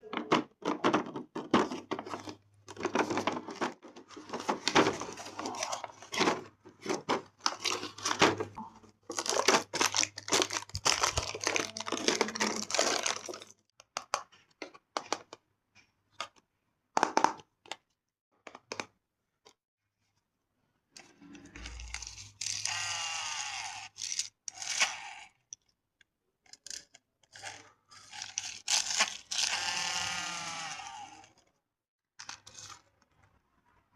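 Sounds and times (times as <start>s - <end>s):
packaging crackling and tearing: 2.0s - 13.6s, 28.1s - 30.4s
small electric motor whirring: 22.4s - 25.3s, 29.3s - 31.4s.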